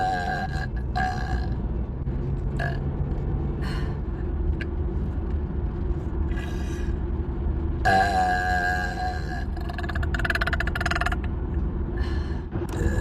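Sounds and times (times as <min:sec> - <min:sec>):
woman burping: 0:12.7 - 0:13.0.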